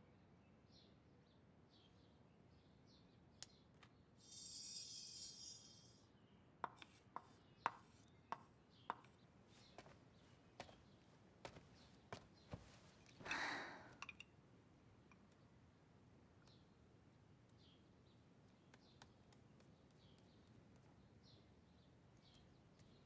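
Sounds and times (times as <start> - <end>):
high hiss: 4.2 - 6.0.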